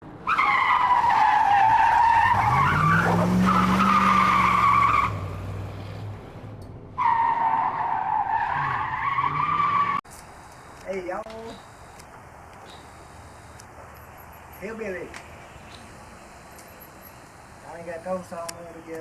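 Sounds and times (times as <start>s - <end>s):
tyres squealing: 0.2s - 6.2s, 7.0s - 10.0s
engine revving: 1.4s - 7.0s.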